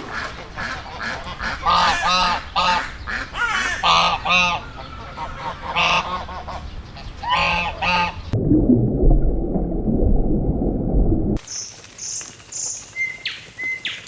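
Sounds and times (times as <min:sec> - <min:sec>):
geese honking: 0:00.1 - 0:08.3.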